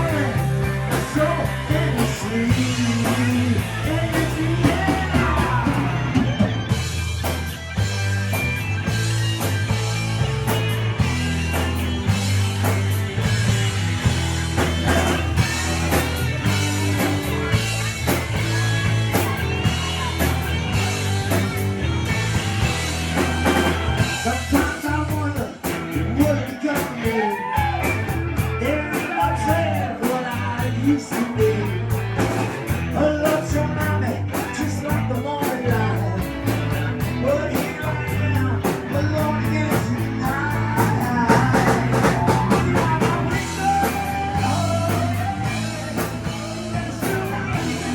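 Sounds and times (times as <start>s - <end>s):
lead guitar bending notes: 0.0s - 25.1s
bass guitar: 0.0s - 47.9s
drums: 0.0s - 47.9s.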